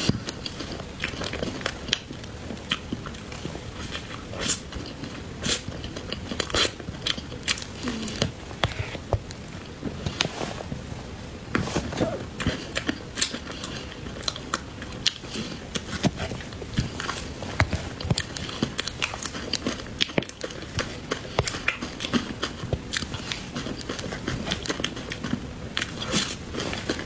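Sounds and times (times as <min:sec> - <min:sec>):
person biting and chewing: 0:03.9 - 0:09.2, 0:12.3 - 0:27.0.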